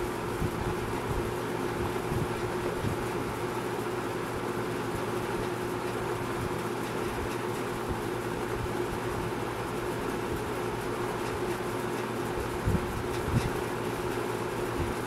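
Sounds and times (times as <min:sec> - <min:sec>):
box fan running: 0:00.0 - 0:15.0.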